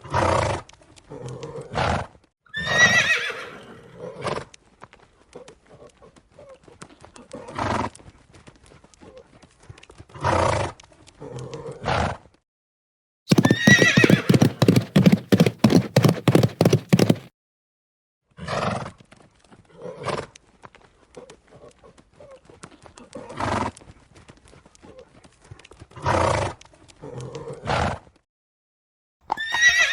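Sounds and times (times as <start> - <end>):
horse neighing: 2.5 - 4.1, 13.3 - 17.2, 29.3 - 29.9
light hoof steps: 4.6 - 10.2, 13.3 - 17.3, 20.4 - 26.0
galloping hoofbeats: 13.3 - 17.3
horse snorting: 13.3 - 17.3.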